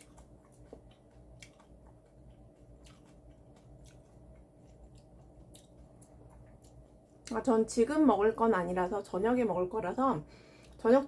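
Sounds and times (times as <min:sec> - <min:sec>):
chewing crunches: 0:00.0 - 0:07.4
low room hum: 0:00.0 - 0:11.0.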